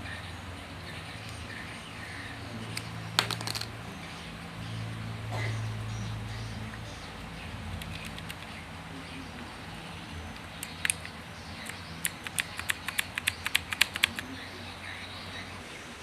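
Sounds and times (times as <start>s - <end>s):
faint low hum: 0.0s - 16.0s
mechanical keyboard clicks: 7.8s - 8.5s, 10.6s - 14.2s.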